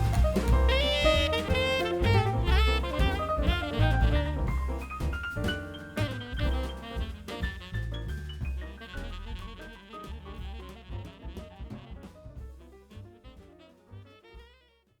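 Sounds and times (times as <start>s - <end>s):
jazz background music: 0.0s - 14.8s.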